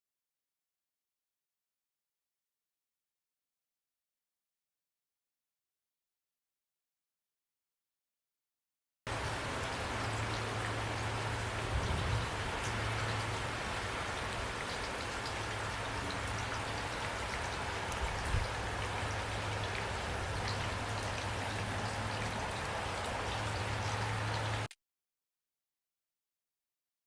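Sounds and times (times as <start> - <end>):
steady rain falling: 9.1 - 24.7.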